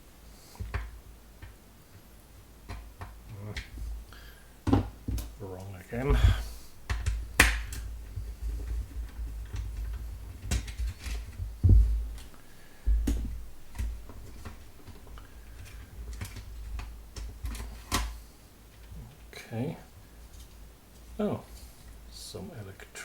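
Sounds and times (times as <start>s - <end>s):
fan parts clicking and knocking: 2.6s - 19.4s
low handling thumps: 5.8s - 10.3s, 11.3s - 15.2s.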